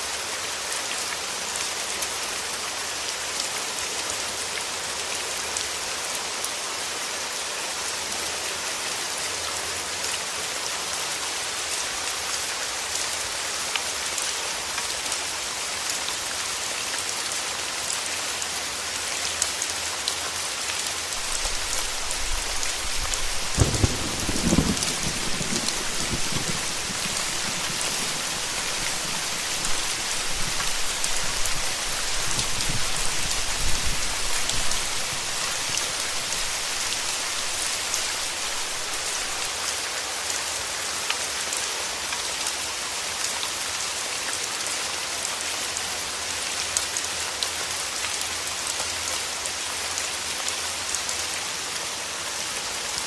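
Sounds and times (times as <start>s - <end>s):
steady rain falling: 0.0s - 53.0s
low rumbles of thunder: 21.3s - 36.4s.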